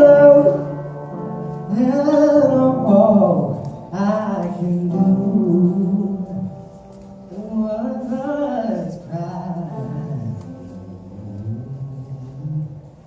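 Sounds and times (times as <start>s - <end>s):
piano: 0.0s - 13.0s
man singing long sliding notes: 7.3s - 13.0s.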